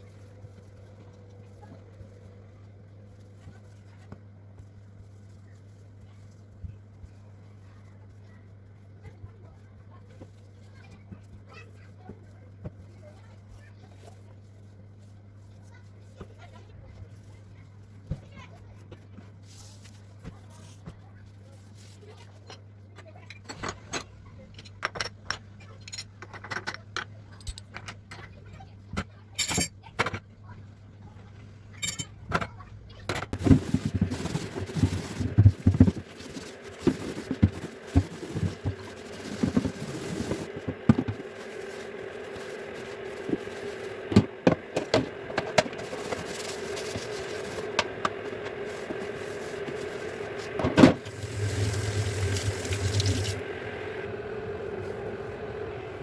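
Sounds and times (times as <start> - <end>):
dishes and utensils clattering: 23.2 - 28.3, 29.4 - 30.3, 31.8 - 38.5
steady hum: 30.7 - 56.0.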